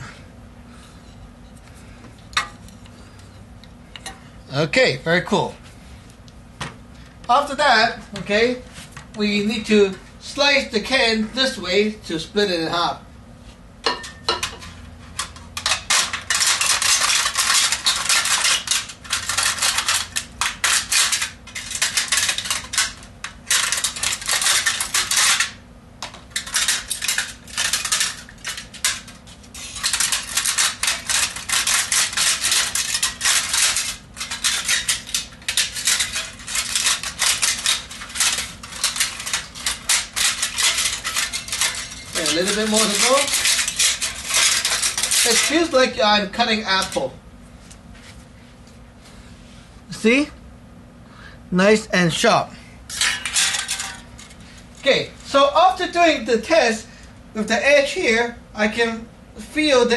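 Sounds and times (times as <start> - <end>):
knife scraping aluminium can: 26.4 - 45.9.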